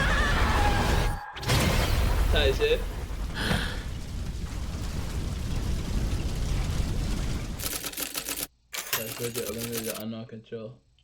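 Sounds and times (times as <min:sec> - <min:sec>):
low explosion rumble: 0:01.6 - 0:07.6
rapid typewriter-like clicking: 0:07.6 - 0:10.0.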